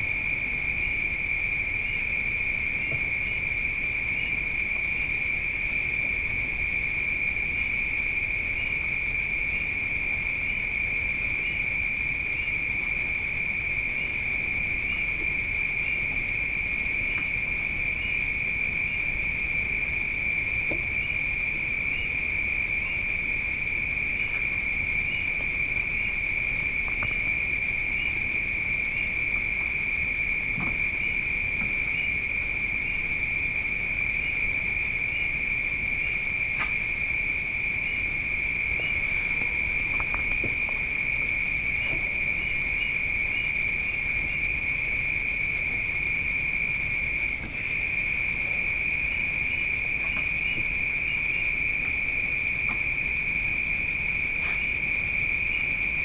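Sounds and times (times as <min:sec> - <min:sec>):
crickets trilling: 0:00.0 - 0:56.0.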